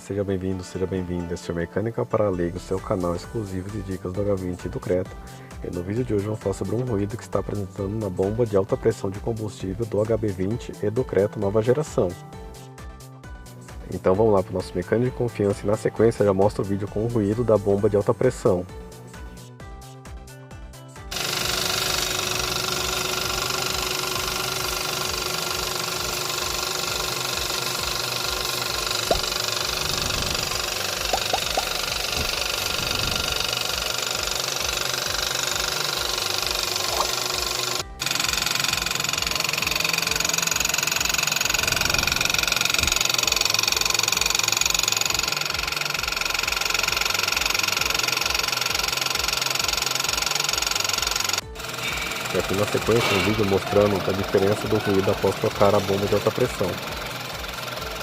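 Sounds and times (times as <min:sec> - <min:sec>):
fuel pump noise: 0:21.1 - 0:58.0
petrol engine idling: 0:21.1 - 0:58.0.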